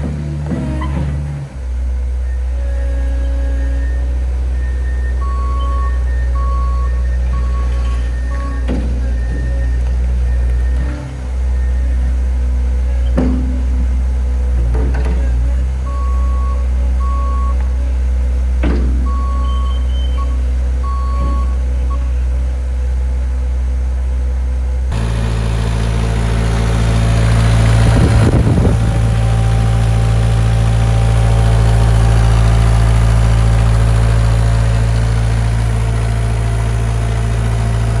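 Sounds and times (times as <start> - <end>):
knocks: 0.0 - 1.6, 7.3 - 11.4, 13.1 - 16.2, 18.6 - 22.1
diesel engine running: 0.0 - 38.0
beeping warning alarm: 3.8 - 12.4, 15.8 - 17.9, 18.7 - 22.3, 27.6 - 34.4.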